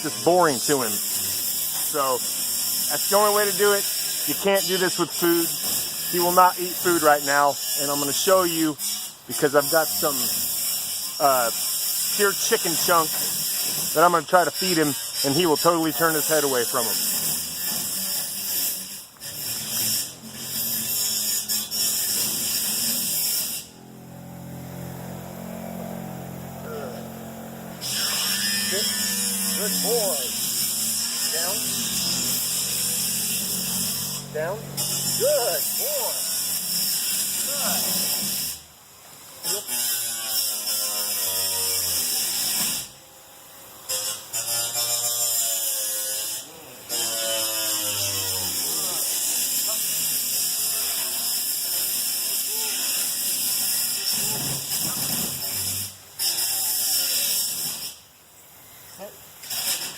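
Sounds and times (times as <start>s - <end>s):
angle grinder cutting sheet metal: 0.0s - 58.0s, 59.4s - 59.9s
steady motor hum: 18.9s - 38.0s.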